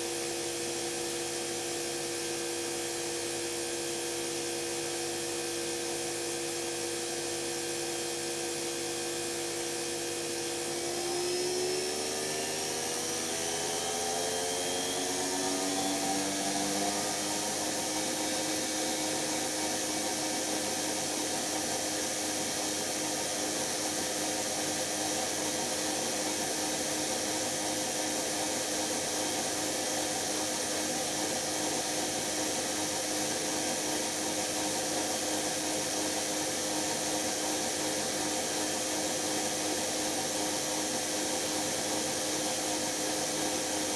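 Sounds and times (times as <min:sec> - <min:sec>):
washing machine motor whining: 0:10.2 - 0:21.2.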